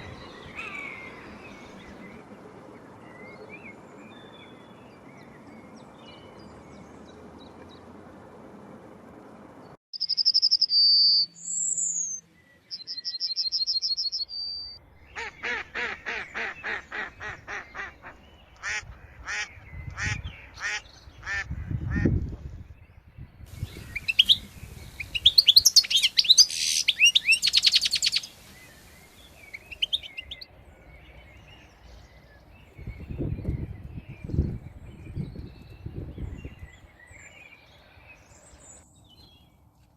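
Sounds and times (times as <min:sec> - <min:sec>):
harsh bird calls: 0:00.0 - 0:02.2, 0:10.0 - 0:22.2, 0:23.5 - 0:38.8
high bird chirping: 0:09.9 - 0:18.6, 0:23.5 - 0:30.5
bird whistled notes and trill: 0:10.0 - 0:14.8, 0:23.6 - 0:30.5.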